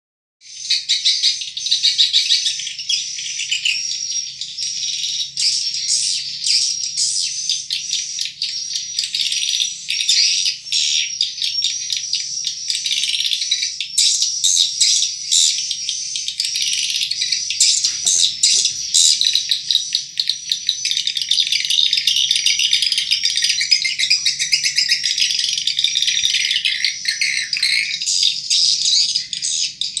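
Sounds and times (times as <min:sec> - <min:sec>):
swiftlet twittering chirps: 0:01.4 - 0:30.0.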